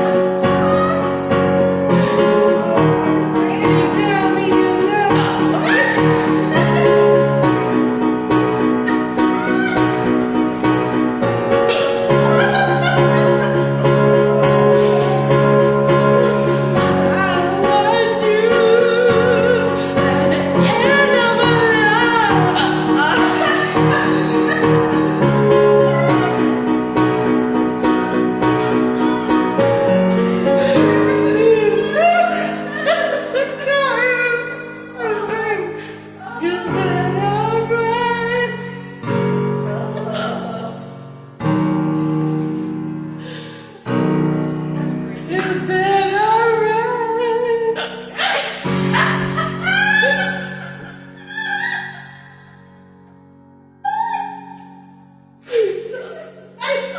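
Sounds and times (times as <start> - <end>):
woman singing: 2.2 - 7.8, 16.9 - 26.9, 30.6 - 38.8, 45.2 - 50.3.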